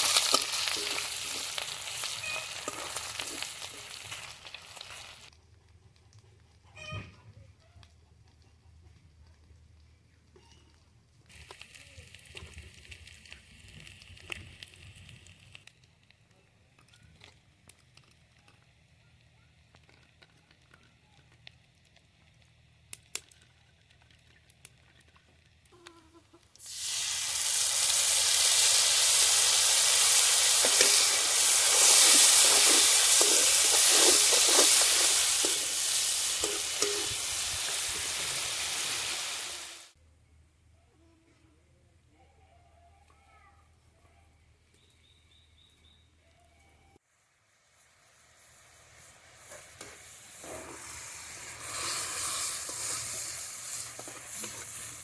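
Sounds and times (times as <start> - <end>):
food sizzling in hot oil: 0.0 - 5.3, 11.3 - 15.7, 26.6 - 40.0, 47.0 - 55.0.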